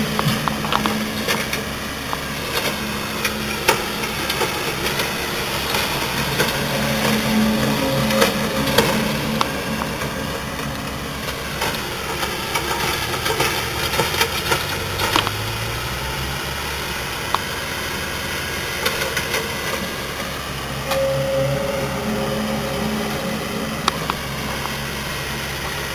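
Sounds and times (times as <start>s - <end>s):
short higher tone: 4.8s - 12.1s, 20.6s - 25.9s
steady low rumble: 20.3s - 25.9s.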